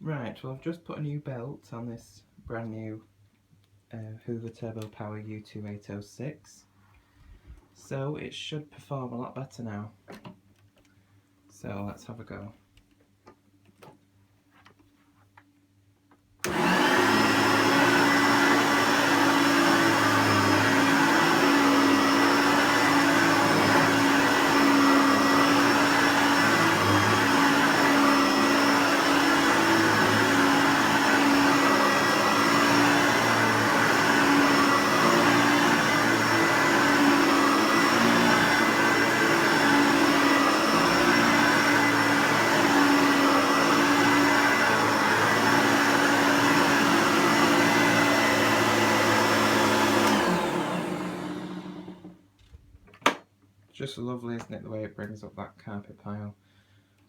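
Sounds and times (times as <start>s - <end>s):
upright vacuum cleaner running: 16.4s - 52.2s.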